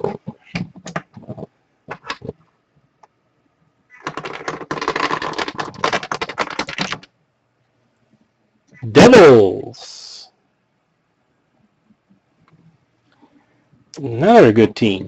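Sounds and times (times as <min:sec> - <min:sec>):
keyboard typing: 0:03.9 - 0:07.1.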